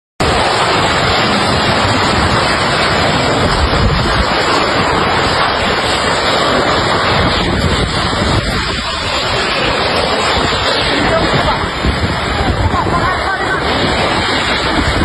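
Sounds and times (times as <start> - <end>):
wind buffeting microphone: 0.2 - 15.0.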